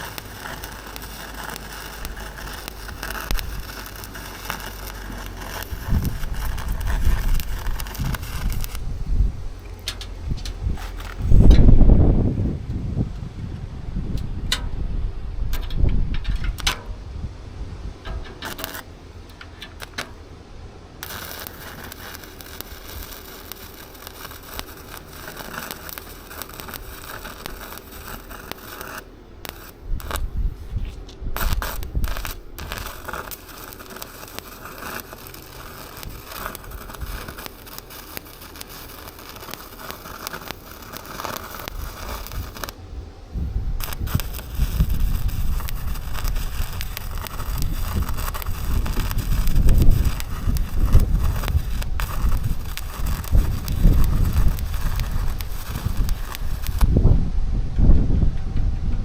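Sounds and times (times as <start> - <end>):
welding arc crackling: 0.0 - 12.1, 15.5 - 17.0, 18.0 - 20.3, 20.9 - 57.2
low rumble: 0.0 - 19.4, 40.9 - 59.0.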